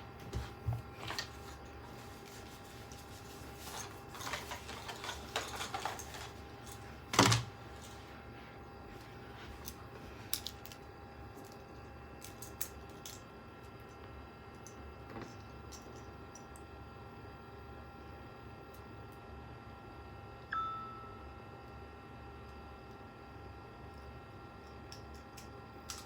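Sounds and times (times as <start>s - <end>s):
clicks and rattles of computer parts: 2.8s - 7.9s, 24.9s - 26.0s.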